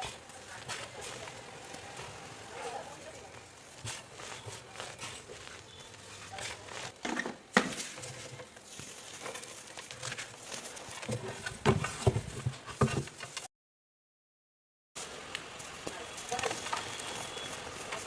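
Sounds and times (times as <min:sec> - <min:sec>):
chalk crunching: 0:00.0 - 0:07.0, 0:07.7 - 0:11.1.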